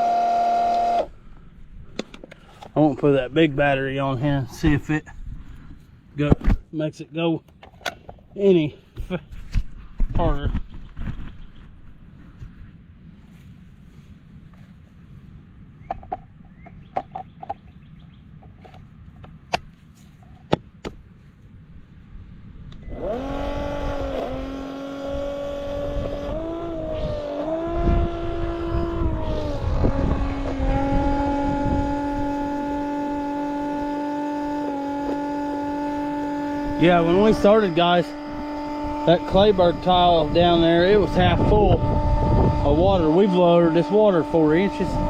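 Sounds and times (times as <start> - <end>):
pump motor high-pitched whine: 0.0 - 1.2, 22.8 - 45.0
sharp clicks and knocks: 15.8 - 17.7.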